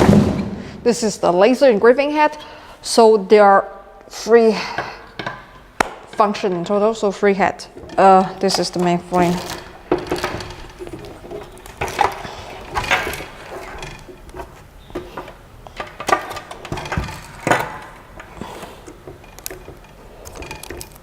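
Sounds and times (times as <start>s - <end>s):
printer parts knocking and rustling: 7.7s - 21.0s.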